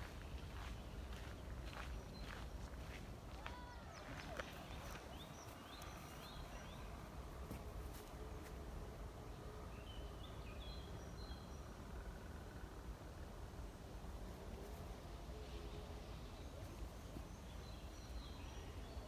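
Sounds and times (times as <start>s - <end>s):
small birds chirping: 0.0s - 8.5s, 16.3s - 19.0s.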